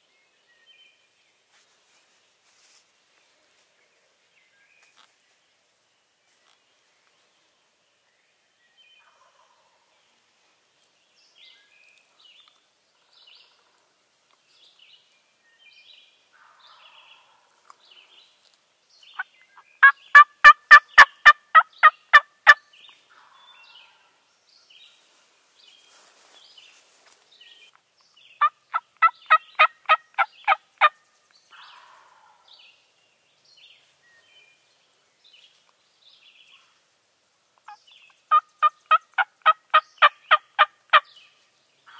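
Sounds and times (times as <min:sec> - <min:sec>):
faint songbird chirps: 0:00.0 - 0:41.9
turkey gobbling: 0:19.8 - 0:22.6, 0:28.4 - 0:30.9, 0:38.3 - 0:41.0.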